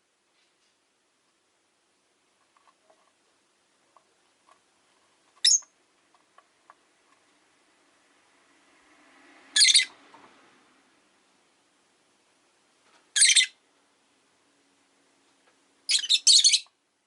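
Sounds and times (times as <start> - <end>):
bird shrill calls: 5.4 - 5.7, 9.6 - 9.9, 13.2 - 13.6, 15.9 - 16.7.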